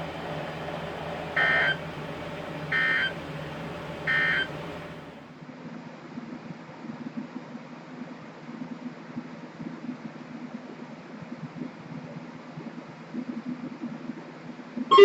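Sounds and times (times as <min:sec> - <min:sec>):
buzzing data tones: 0:00.0 - 0:05.1
radio hiss and hum: 0:00.0 - 0:05.2.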